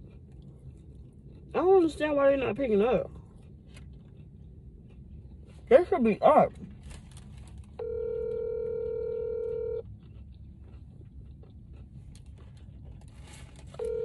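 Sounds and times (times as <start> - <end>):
telephone ringback tone: 7.8 - 9.8, 13.8 - 14.0.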